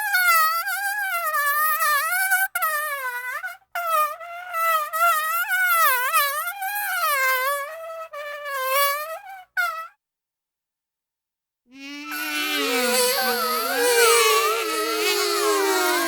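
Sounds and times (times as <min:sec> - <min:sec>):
mosquito whine: 0:11.8 - 0:16.0.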